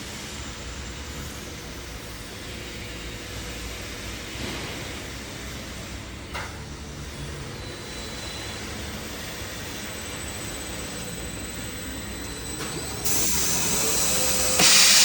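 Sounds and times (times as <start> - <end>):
band saw cutting machine running: 7.1 - 15.0.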